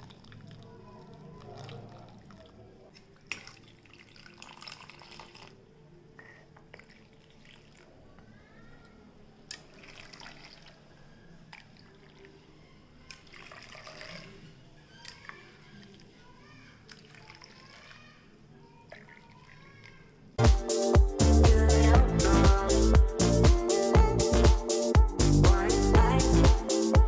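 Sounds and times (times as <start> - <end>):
liquid dripping and pouring: 0.0 - 8.3, 9.4 - 20.2
rising filling sound: 20.4 - 27.0.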